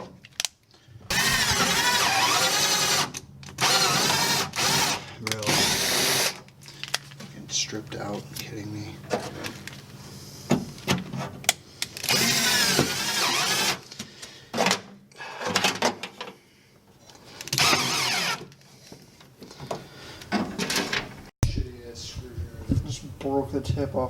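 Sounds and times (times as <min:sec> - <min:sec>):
power drill running: 0:01.1 - 0:06.4, 0:12.0 - 0:13.8, 0:17.5 - 0:18.5.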